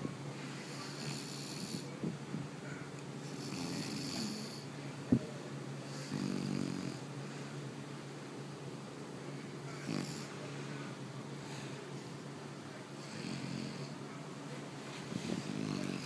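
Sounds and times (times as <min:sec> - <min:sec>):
woman snoring: 0:15.5 - 0:16.0.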